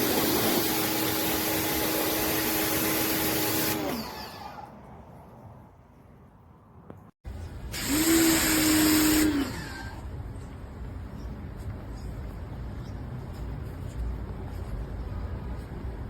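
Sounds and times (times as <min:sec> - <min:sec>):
pressure washer motor and spray: 0:00.0 - 0:04.7, 0:07.3 - 0:10.1.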